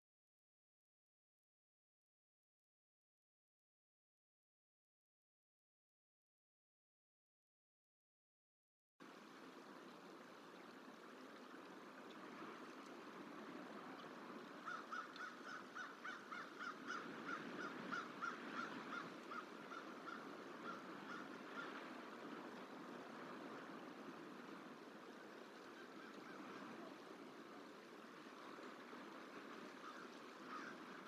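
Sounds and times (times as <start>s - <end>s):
faint outdoor hiss: 9.0s - 31.0s
crow cawing: 14.6s - 21.8s, 29.8s - 30.9s.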